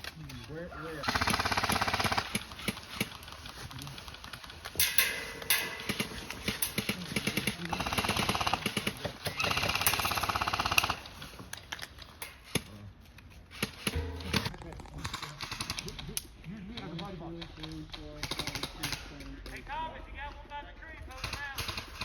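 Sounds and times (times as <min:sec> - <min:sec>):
airsoft guns firing bursts: 0:01.0 - 0:11.2, 0:21.1 - 0:22.0.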